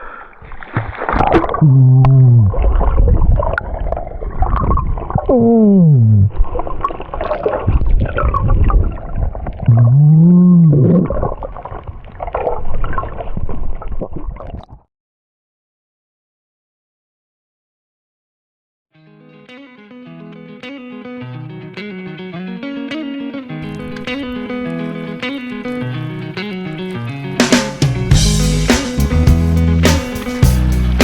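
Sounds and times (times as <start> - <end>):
gurgling rumbling water: 0.4 - 14.8
whale moaning calls: 5.3 - 6.4.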